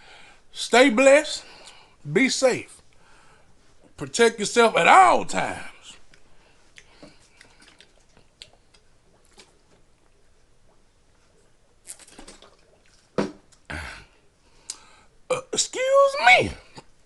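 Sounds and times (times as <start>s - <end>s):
quiet chewing and mouth clicks: 6.0s - 13.7s, 14.5s - 15.0s.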